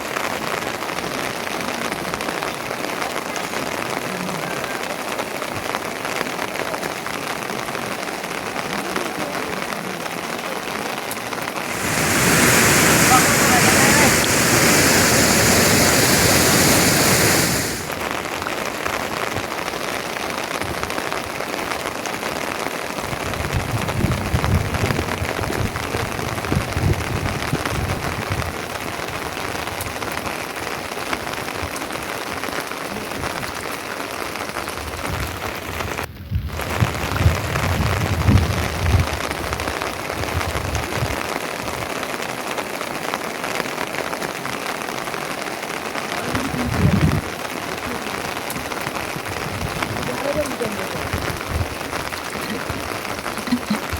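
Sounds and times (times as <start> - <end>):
steady rain falling: 0.0 - 53.9
loud rush of noise: 11.6 - 18.0
low rumbling: 11.7 - 18.0.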